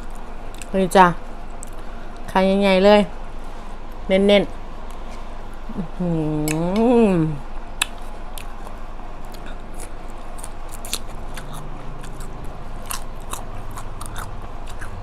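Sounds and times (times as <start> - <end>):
mouth chewing clicks and smacks: 7.8 - 15.0.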